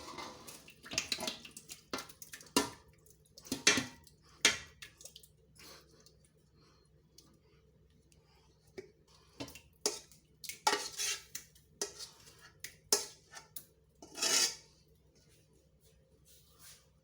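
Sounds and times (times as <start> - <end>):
metal spoon scraping a pot: 0.0 - 0.7, 9.4 - 14.8.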